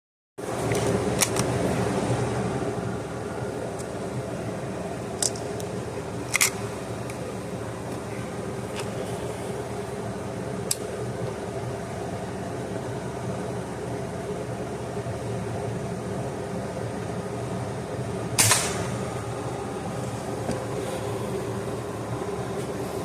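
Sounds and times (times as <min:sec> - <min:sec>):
steady low hum: 0:00.4 - 0:23.0
air rifle shot: 0:18.4 - 0:19.1.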